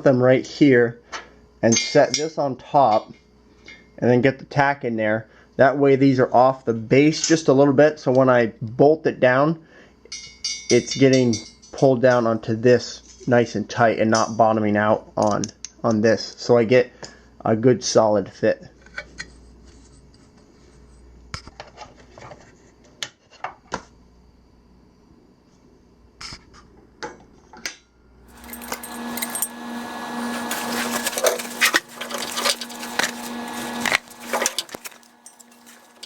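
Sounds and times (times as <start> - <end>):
steel parts clinking: 28.3 - 36.0.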